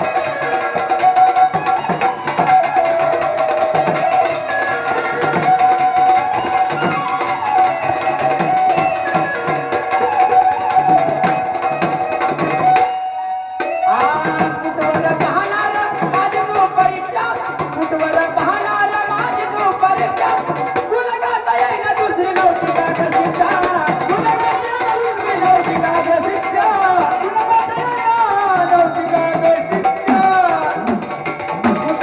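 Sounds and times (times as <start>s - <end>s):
drum beating steady rhythm: 22.0s - 32.0s.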